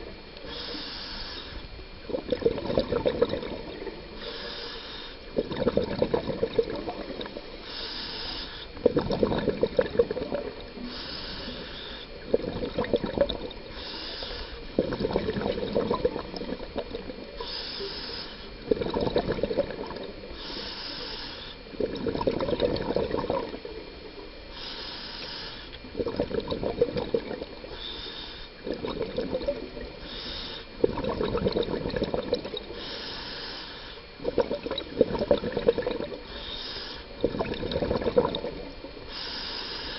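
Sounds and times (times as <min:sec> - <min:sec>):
regulator inhale hiss: 0:00.0 - 0:01.9, 0:03.6 - 0:05.4, 0:06.8 - 0:08.8, 0:10.7 - 0:12.3, 0:13.6 - 0:14.8, 0:17.1 - 0:18.7, 0:20.2 - 0:21.8, 0:24.1 - 0:25.9, 0:27.5 - 0:28.9, 0:29.5 - 0:30.8, 0:32.6 - 0:34.3, 0:36.1 - 0:37.4, 0:38.5 - 0:39.9
bubbling gurgle of exhaled air: 0:00.0 - 0:39.9.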